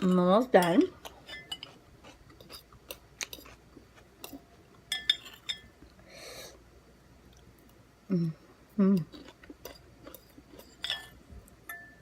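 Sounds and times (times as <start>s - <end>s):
cutlery clinking on a dish: 4.9s - 5.7s, 10.1s - 12.0s
soft breath: 6.0s - 6.6s.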